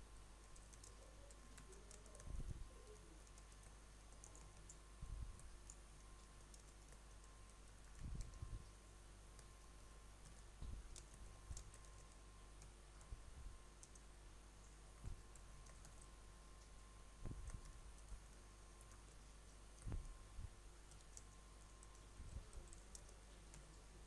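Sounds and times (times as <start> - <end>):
low steady hum: 0.0 - 24.0
computer keyboard keystrokes: 0.5 - 8.8, 10.2 - 13.1, 13.8 - 14.1, 15.0 - 16.1, 20.8 - 23.8.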